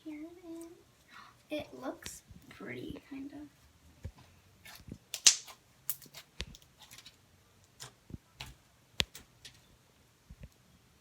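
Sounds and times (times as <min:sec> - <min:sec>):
slime clicking and popping: 0:05.1 - 0:06.2.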